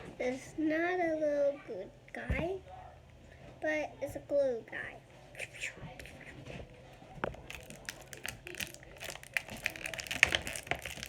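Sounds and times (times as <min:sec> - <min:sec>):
plastic packaging crinkling: 0:07.1 - 0:11.0.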